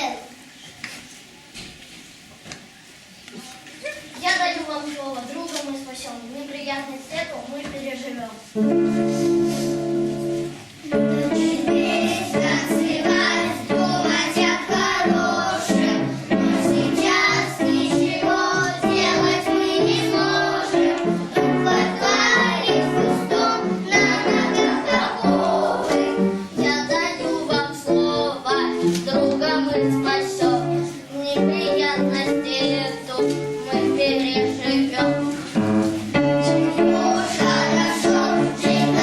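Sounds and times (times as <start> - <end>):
instrumental accompaniment: 8.6 - 39.0
children singing: 9.0 - 39.0.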